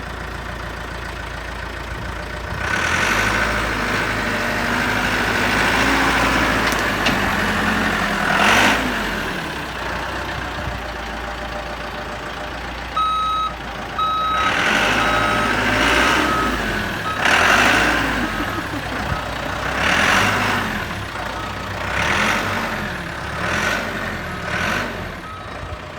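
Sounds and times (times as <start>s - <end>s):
backhoe engine running: 0.0s - 25.9s
reversing alarm beeping: 13.0s - 18.7s, 25.2s - 25.6s.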